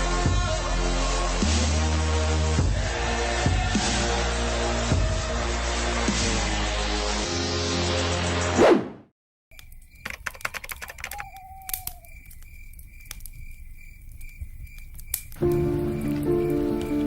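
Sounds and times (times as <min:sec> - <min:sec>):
sharp clicks and taps: 0:09.5 - 0:13.3.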